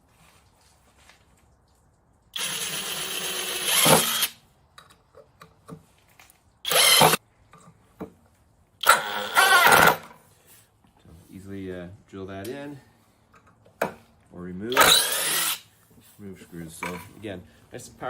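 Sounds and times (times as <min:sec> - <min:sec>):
cordless drill driving screw: 0:02.4 - 0:04.4, 0:06.7 - 0:07.2, 0:08.8 - 0:10.0, 0:14.7 - 0:15.6.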